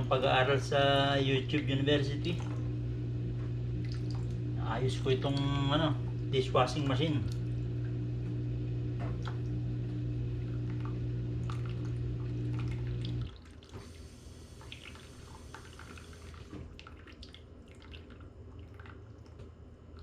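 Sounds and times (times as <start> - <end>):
dishwasher motor humming: 0.0 - 16.8
water dripping: 1.5 - 20.0.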